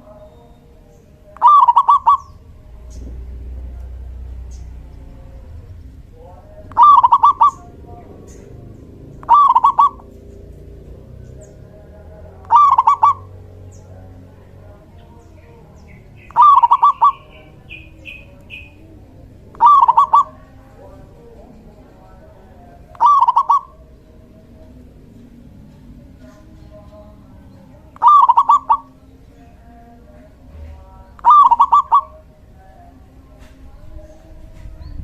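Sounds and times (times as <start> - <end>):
dove cooing: 1.4 - 11.8, 12.4 - 13.7, 16.2 - 21.4, 22.0 - 26.5, 27.8 - 29.2, 31.2 - 32.3.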